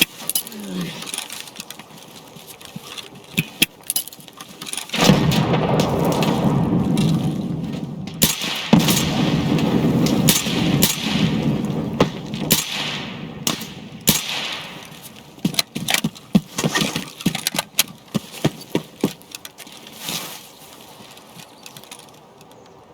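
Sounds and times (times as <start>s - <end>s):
sharp cracks and bangs: 2.8s - 19.7s
loud rough rumbling: 4.9s - 15.5s.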